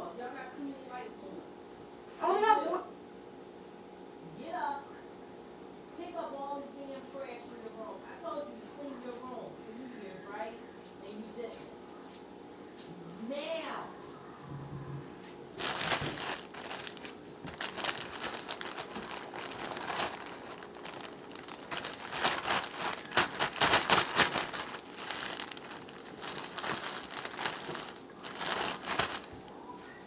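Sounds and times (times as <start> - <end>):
wrapper crinkling: 15.6 - 29.5.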